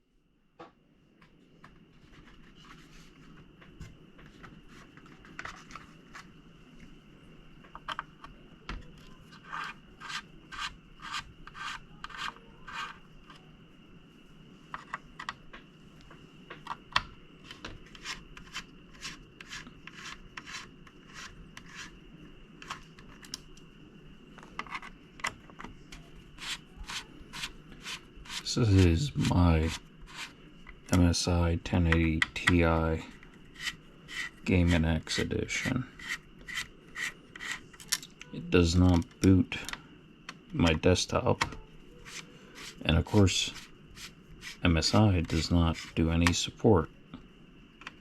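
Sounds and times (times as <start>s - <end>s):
faint steady high tone: 11.8s - 14.7s, 37.8s - 43.5s.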